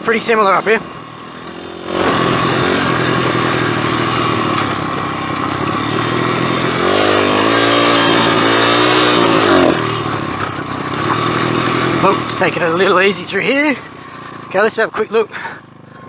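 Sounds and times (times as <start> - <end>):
pit bike engine revving: 0.0 - 16.0.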